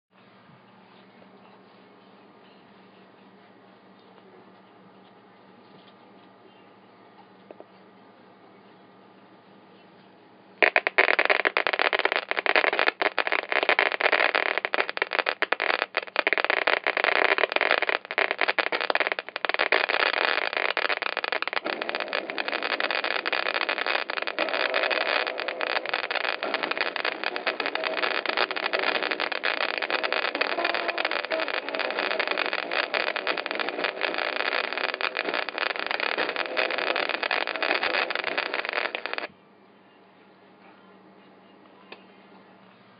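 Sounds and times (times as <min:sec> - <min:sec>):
speakers crackling with static: 0:10.6 - 0:39.3.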